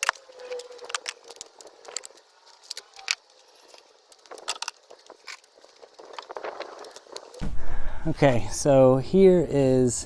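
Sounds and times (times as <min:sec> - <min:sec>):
small hard objects clicking: 0:00.0 - 0:07.4.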